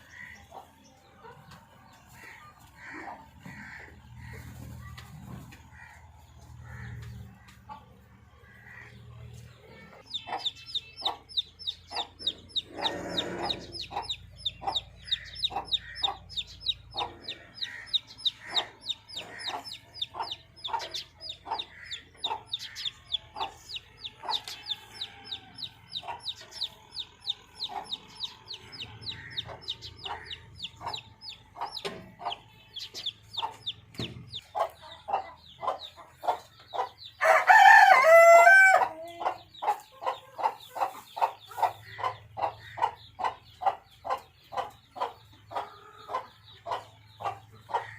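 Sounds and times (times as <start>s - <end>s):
chickens calling: 0.0s - 47.9s
rooster crowing: 37.2s - 38.9s.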